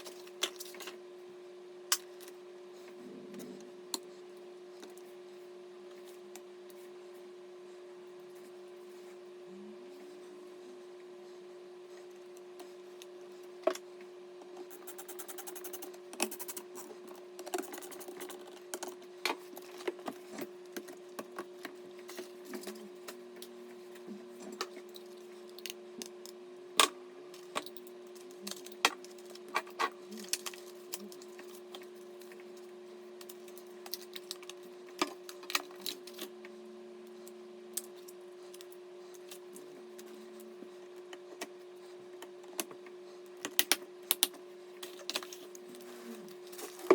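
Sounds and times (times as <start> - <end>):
steady hum: 0.0 - 46.9.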